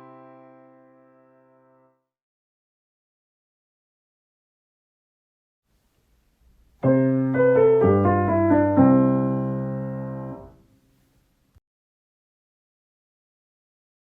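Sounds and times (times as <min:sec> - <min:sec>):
piano chords: 0:00.0 - 0:02.0, 0:06.8 - 0:10.7.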